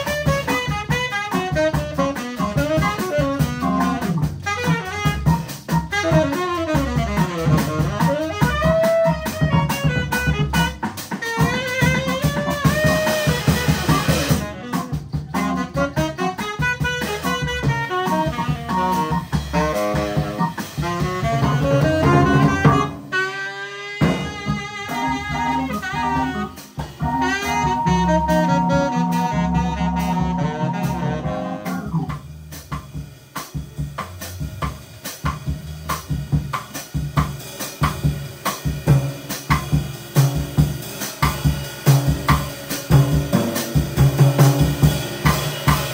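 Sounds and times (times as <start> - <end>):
saxophone melody: 0.0 - 32.2
drum kit: 0.0 - 45.9
guitar: 24.0 - 32.2.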